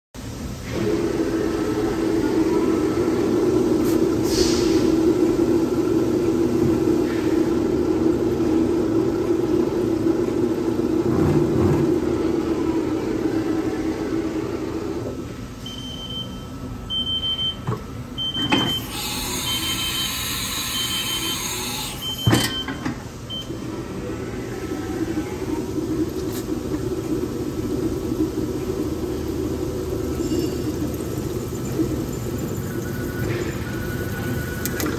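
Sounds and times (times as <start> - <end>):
mill machine hum: 0.2 - 34.9
hiss: 3.8 - 5.2.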